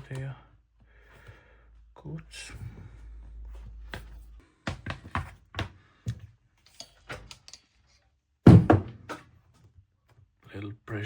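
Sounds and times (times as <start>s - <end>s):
loud thump: 8.5s - 9.1s.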